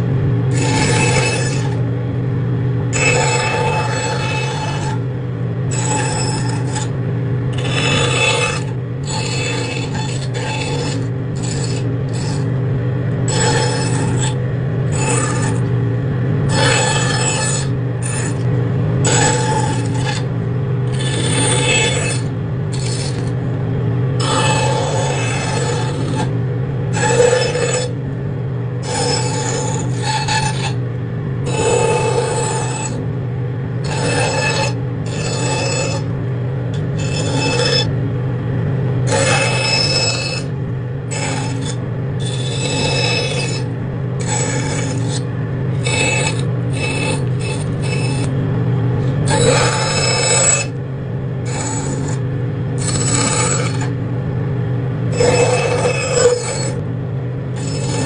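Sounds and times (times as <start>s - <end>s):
machine humming: 0.0s - 58.0s
rasping scraping strokes: 0.5s - 1.9s, 2.9s - 5.0s, 5.7s - 12.6s, 13.2s - 15.7s, 16.5s - 20.3s, 20.9s - 23.4s, 24.2s - 28.0s, 28.8s - 30.8s, 31.4s - 33.0s, 33.8s - 36.1s, 36.7s - 37.9s, 39.0s - 40.5s, 41.1s - 48.4s, 49.0s - 50.8s, 51.4s - 52.2s, 52.8s - 54.0s, 55.1s - 56.8s, 57.6s - 58.0s.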